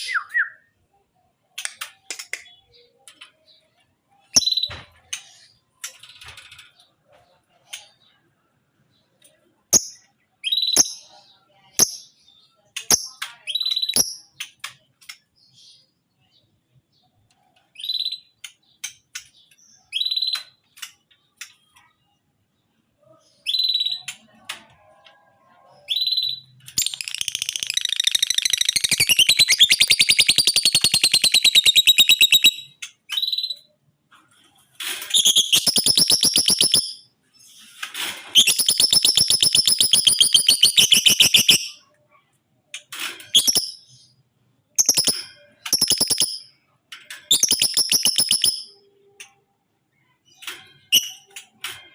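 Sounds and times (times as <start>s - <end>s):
lovebird chirping and trilling: 3.6s - 5.5s, 9.7s - 11.1s, 17.7s - 20.6s, 23.4s - 24.2s, 25.9s - 33.8s, 35.1s - 37.6s, 38.4s - 41.9s, 43.2s - 44.2s, 44.8s - 46.6s, 47.3s - 48.9s, 50.3s - 51.4s.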